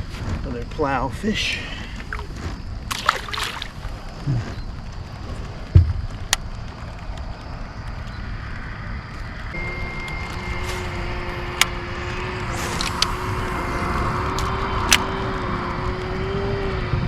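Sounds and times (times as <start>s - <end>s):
low rumble: 0.0s - 17.0s
boat motor humming: 9.2s - 17.0s.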